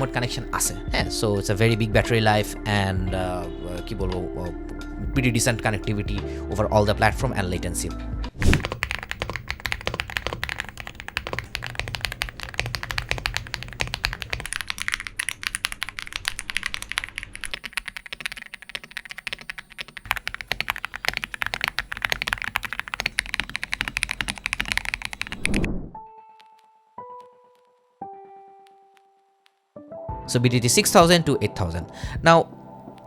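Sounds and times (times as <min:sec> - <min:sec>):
typing on mechanical keyboard: 0:08.4 - 0:25.7.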